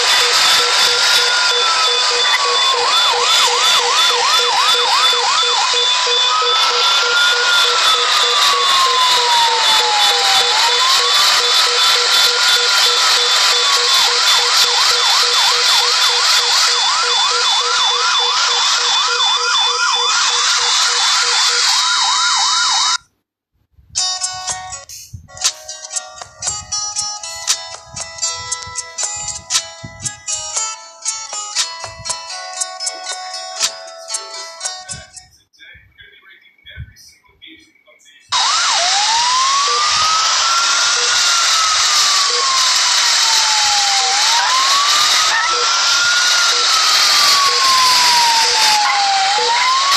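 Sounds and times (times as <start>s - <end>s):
ambulance siren yelping: 0.0s - 23.0s, 38.3s - 49.9s.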